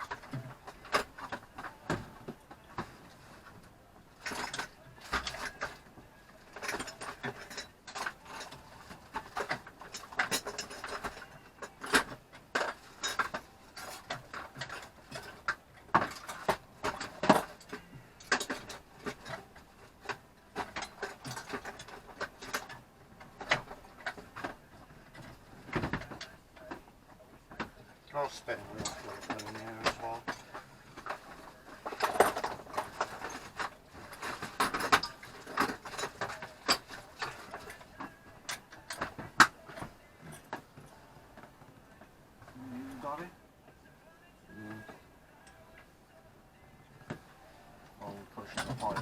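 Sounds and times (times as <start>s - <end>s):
wrench clanking on metal engine: 48.4s - 49.0s.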